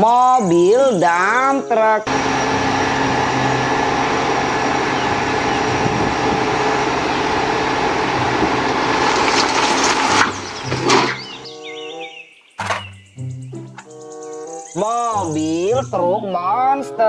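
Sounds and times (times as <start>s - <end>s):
truck engine idling: 2.1s - 11.5s, 12.6s - 13.9s.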